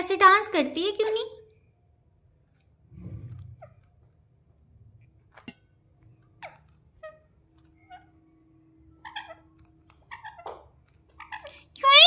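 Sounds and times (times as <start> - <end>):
parakeet chirps and whistles: 9.0 - 9.4.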